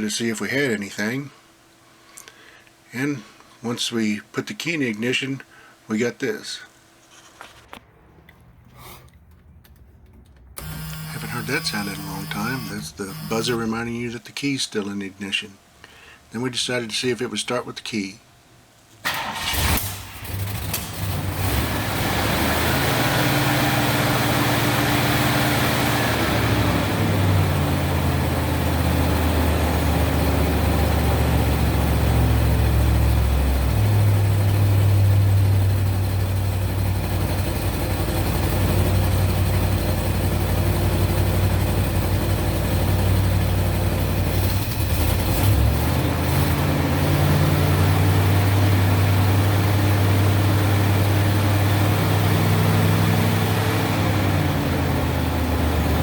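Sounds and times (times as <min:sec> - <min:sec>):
car engine idling: 0:09.6 - 0:13.8, 0:19.1 - 0:56.0.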